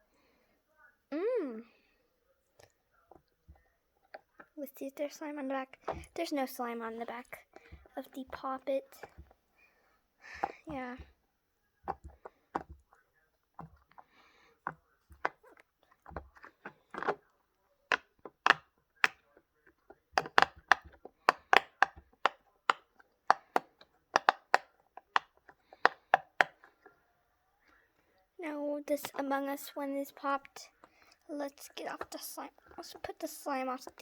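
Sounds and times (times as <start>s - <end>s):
fidget toy bubbles popping: 20.2s - 26.6s.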